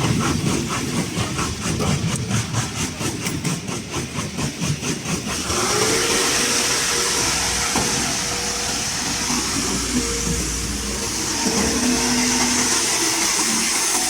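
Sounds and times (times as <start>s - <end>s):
concrete pump chugging: 0.0s - 14.0s
hiss: 0.0s - 14.0s
pump whine: 4.8s - 14.0s.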